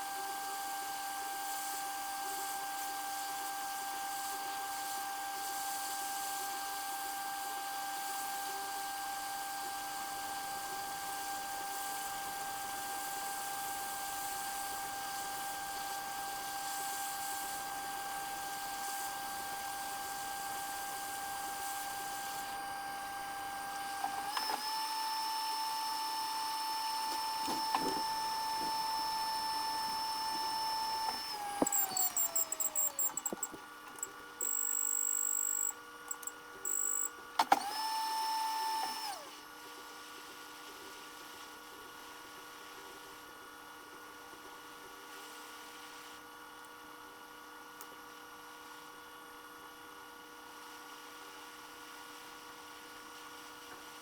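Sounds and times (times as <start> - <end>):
hot air blower whining: 19.5 - 39.3
high beeps: 31.6 - 33.5, 34.4 - 37.1.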